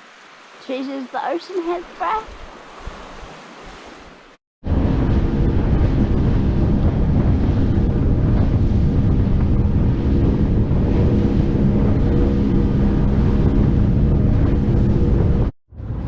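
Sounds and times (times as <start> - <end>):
wind buffeting microphone: 4.6 - 16.0
boat motor running: 5.3 - 16.0.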